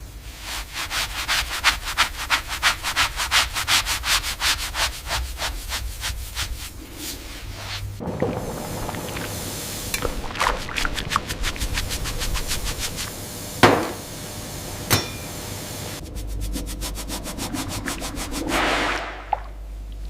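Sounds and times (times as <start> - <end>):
steady low hum: 5.8 - 20.0.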